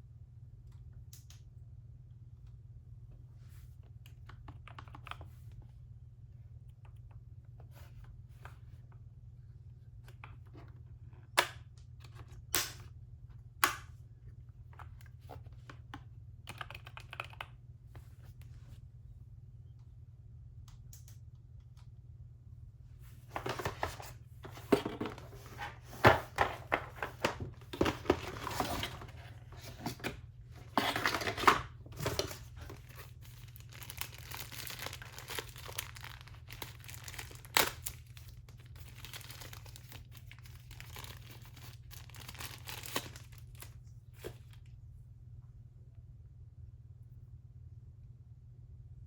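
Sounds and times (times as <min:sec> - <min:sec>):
wrapping crinkling and tearing: 0:30.6 - 0:43.8.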